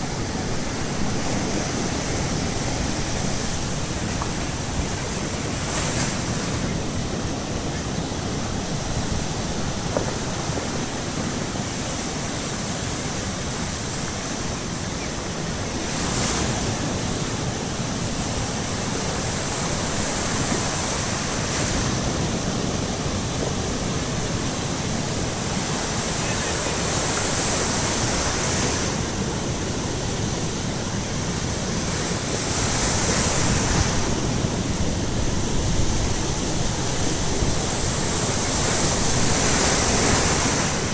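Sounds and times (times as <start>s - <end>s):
waves breaking on shore: 0.0s - 40.9s.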